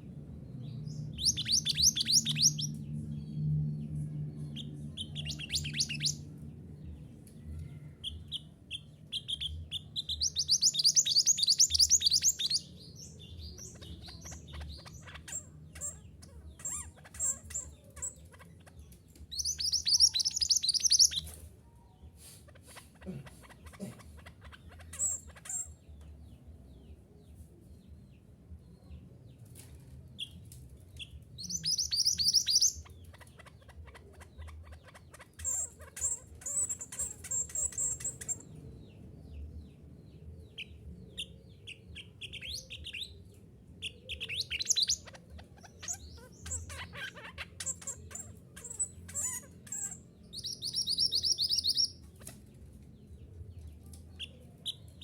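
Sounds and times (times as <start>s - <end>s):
faint low hum: 0.0s - 55.0s
songbird trilling: 1.2s - 2.7s, 4.6s - 6.2s, 8.0s - 12.7s, 19.3s - 21.3s, 31.4s - 38.5s, 43.8s - 52.0s.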